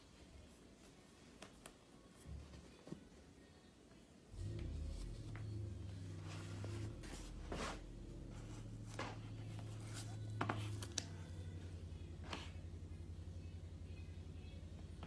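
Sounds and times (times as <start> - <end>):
low steady hum: 0.0 - 15.0
leather and packaging rustling: 6.2 - 11.6.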